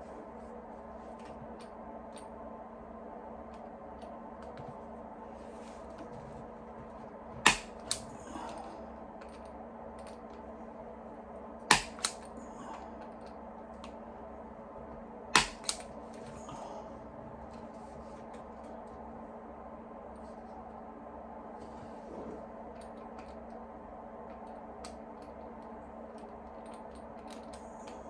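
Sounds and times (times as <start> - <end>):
faint steady hum: 0.0 - 28.0
hand tool clicks: 7.5 - 8.0, 11.7 - 12.3, 15.4 - 15.8.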